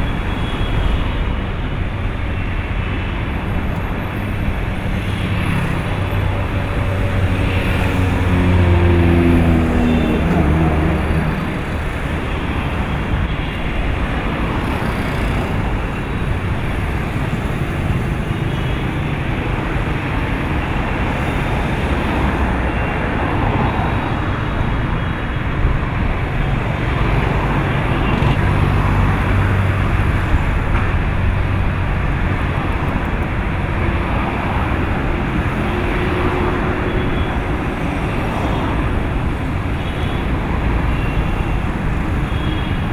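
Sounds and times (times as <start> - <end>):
city road traffic: 0.0 - 42.9
heavy vehicle engine: 0.0 - 42.9.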